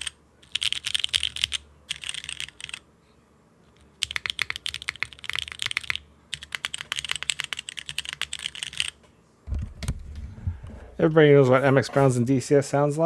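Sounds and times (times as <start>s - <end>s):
mechanical keyboard typing: 0.0s - 2.8s, 4.0s - 10.8s.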